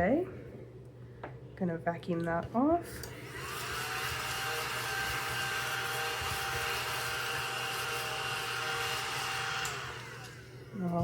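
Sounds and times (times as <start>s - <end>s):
small vacuum cleaner whining: 2.9s - 10.9s.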